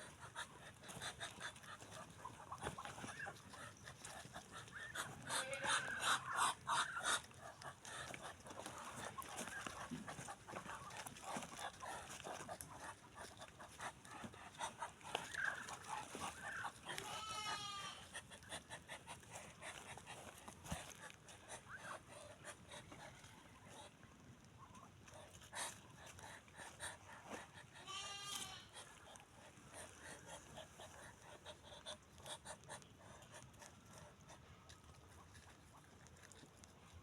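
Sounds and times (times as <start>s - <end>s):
ducks calling: 0.0s - 19.1s.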